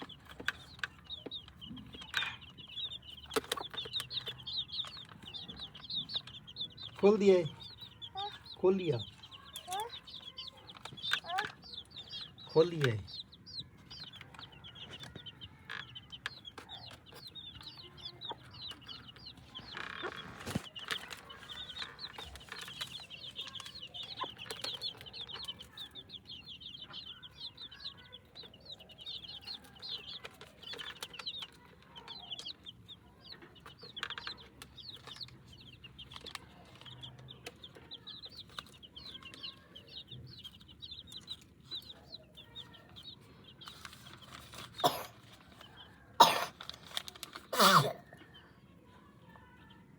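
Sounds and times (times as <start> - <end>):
hen clucking: 0.0 - 47.5
chicks peeping: 0.0 - 49.9.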